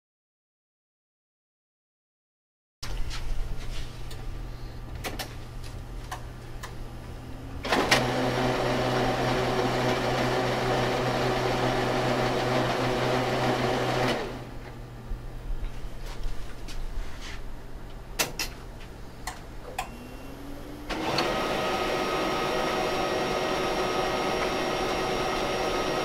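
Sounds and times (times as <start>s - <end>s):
printer low hum: 2.9s - 16.1s, 19.0s - 26.0s.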